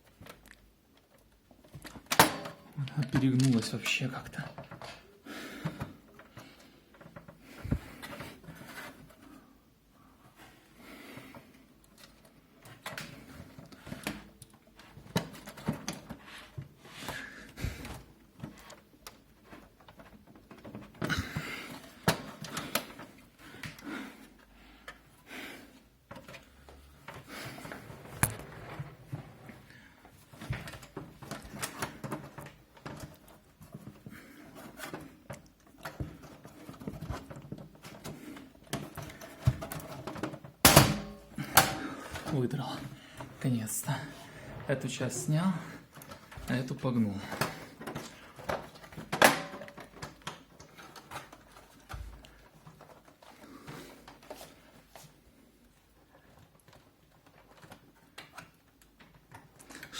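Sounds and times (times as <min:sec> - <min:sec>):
plastic clicks and scraping: 0:56.2 - 0:59.9.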